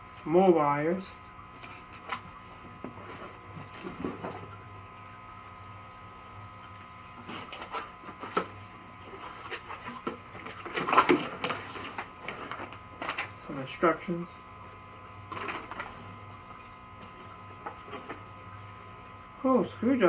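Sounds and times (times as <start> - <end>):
steady background hum: 0.0 - 20.0
packaging rustling and crinkling: 7.2 - 13.5.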